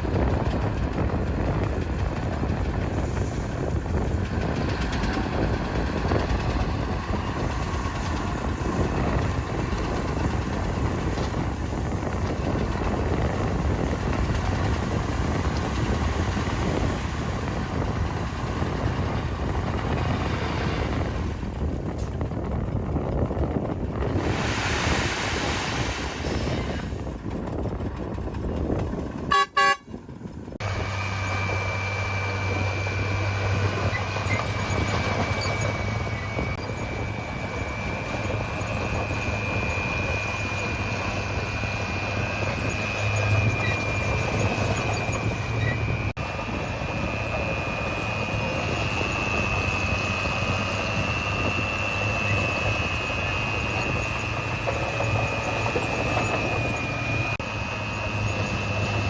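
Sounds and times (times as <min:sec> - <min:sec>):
heavy machinery engine humming: 0:00.0 - 0:59.0
high engine whine: 0:00.0 - 0:59.0
vehicle horn toot: 0:29.3 - 0:29.9.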